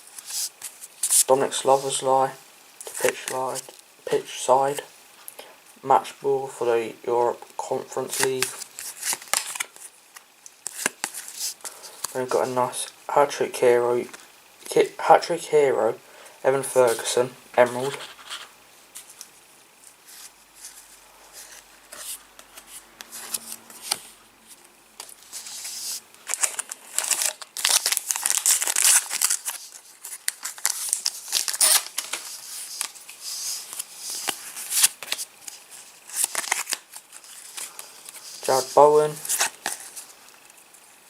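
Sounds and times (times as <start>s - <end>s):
cards shuffling: 7.9s - 12.8s, 16.8s - 19.3s, 19.9s - 24.1s, 25.0s - 40.7s
foil packets crinkling and tearing: 8.0s - 12.2s, 25.0s - 40.8s.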